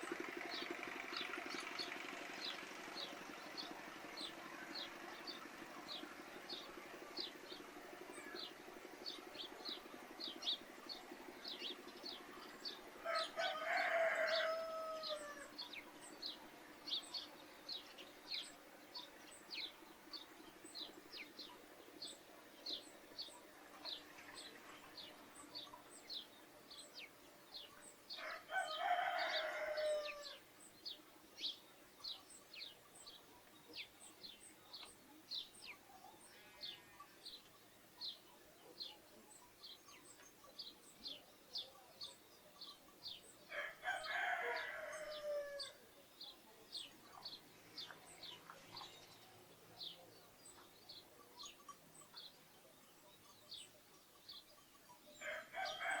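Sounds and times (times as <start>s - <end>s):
sparrows chirping: 0.0s - 56.0s
rooster crowing: 13.0s - 15.6s, 28.2s - 30.4s, 43.5s - 45.8s, 55.2s - 56.0s.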